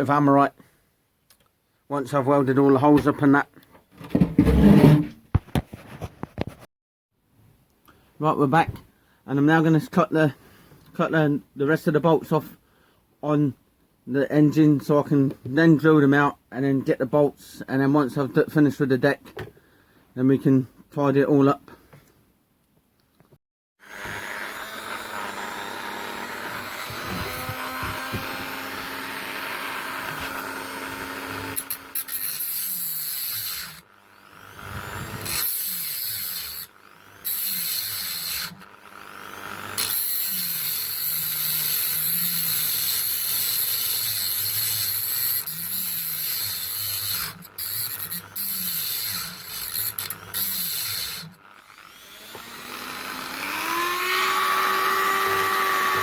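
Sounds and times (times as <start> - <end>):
angle grinder cutting metal: 23.8 - 56.0
grinder motor whining: 23.8 - 56.0.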